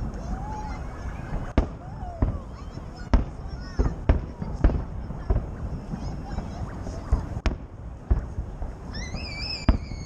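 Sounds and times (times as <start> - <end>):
firework bangs: 0.0 - 10.0
high wavering whistle: 8.9 - 10.0.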